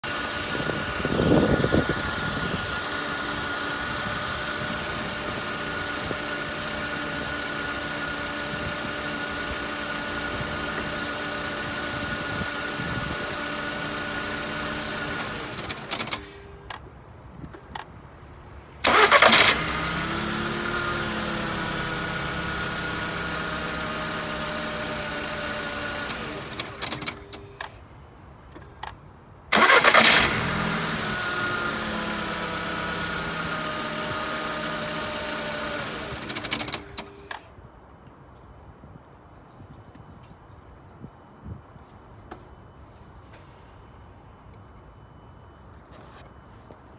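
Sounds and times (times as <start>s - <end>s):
car engine starting and idling: 0.0s - 27.8s, 29.5s - 37.6s
clicks and knocks on shutdown: 13.4s - 16.8s, 18.8s - 27.8s, 29.6s - 37.4s.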